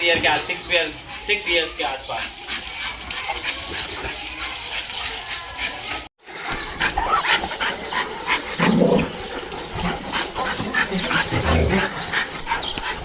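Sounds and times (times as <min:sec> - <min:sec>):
dog whining and yelping: 0:06.8 - 0:07.5.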